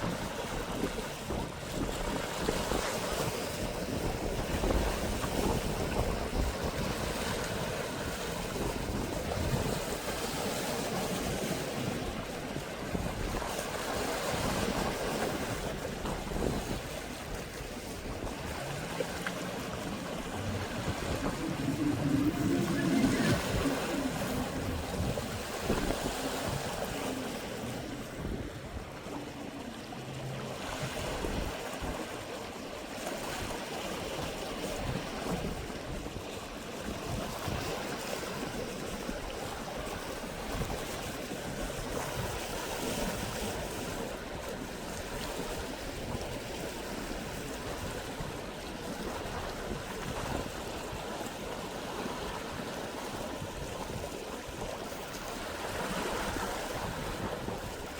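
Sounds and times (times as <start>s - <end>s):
sea waves washing ashore: 0.0s - 57.9s
wind rumbling on microphone: 0.0s - 57.9s.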